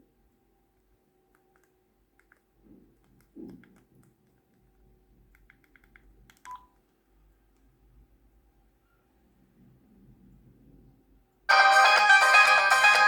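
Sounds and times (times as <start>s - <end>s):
phone key beeps: 6.5s - 6.8s.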